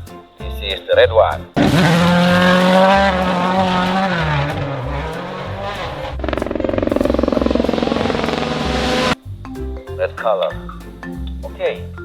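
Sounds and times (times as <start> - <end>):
race car engine at high revs: 1.6 - 9.2.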